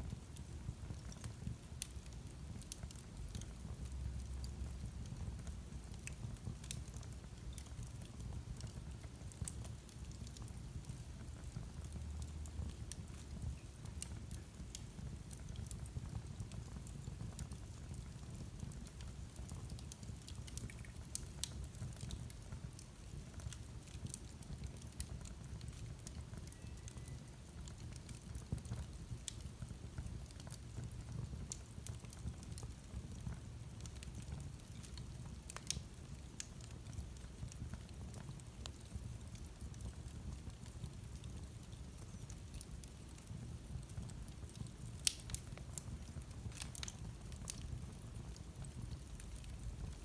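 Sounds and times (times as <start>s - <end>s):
wood fire crackling: 0.0s - 50.0s.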